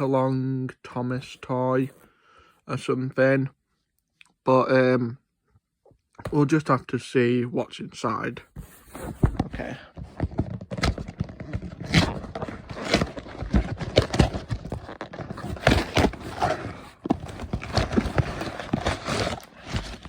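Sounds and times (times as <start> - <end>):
cardboard scraping and rustling: 8.5 - 20.0.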